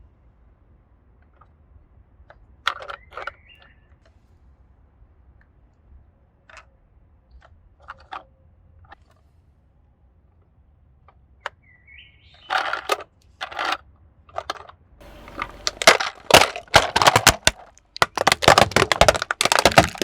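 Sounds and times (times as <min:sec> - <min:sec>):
sharp clicks and crackles: 0:14.4 - 0:20.0
faint low hum: 0:15.0 - 0:19.6.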